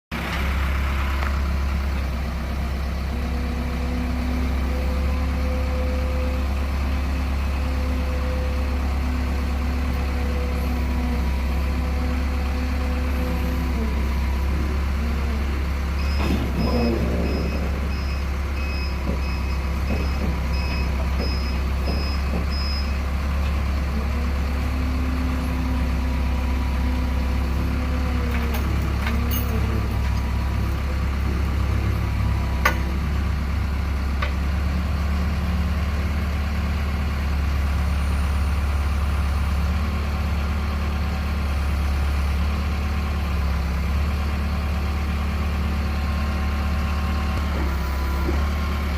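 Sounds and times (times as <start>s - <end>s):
forklift engine running: 0.1s - 48.9s
reversing alarm beeps: 16.0s - 23.1s.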